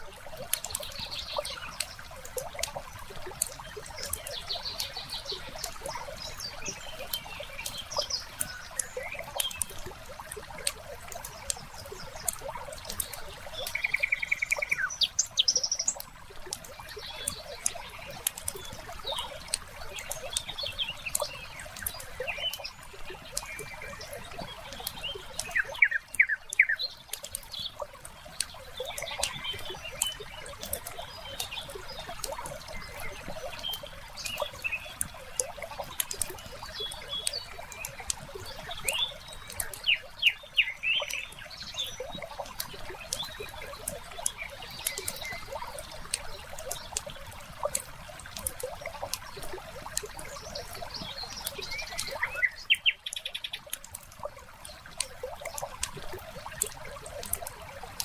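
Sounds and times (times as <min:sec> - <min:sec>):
wood fire crackling and popping: 0:07.0 - 0:13.8, 0:15.2 - 0:39.8
birds chirping and calling: 0:10.6 - 0:47.8, 0:48.6 - 0:53.8.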